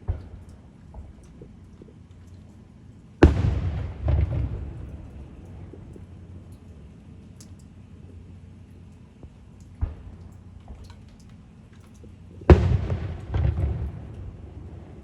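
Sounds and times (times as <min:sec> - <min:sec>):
firework booming: 0:03.2 - 0:05.1, 0:12.5 - 0:15.0.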